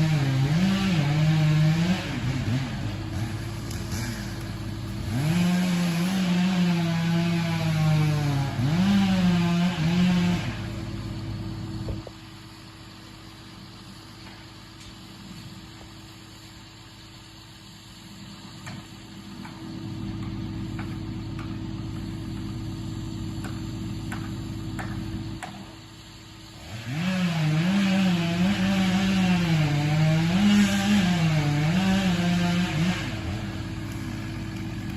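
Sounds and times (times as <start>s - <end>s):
engine running hard: 0.0s - 34.9s.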